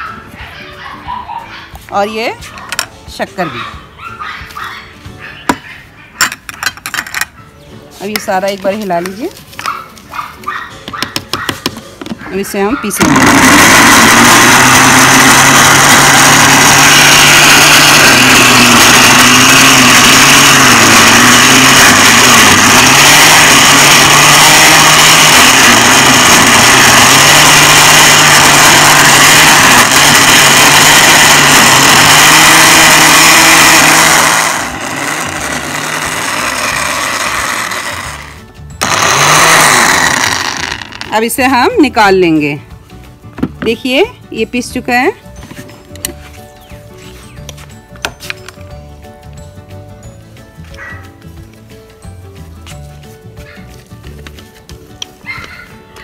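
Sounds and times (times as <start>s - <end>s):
electric mixer grinder running: 12.9s - 41.3s.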